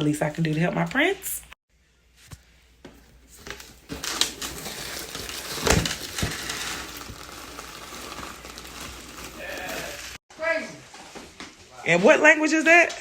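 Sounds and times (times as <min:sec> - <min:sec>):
plastic bag rustling and crinkling: 0:03.1 - 0:10.2.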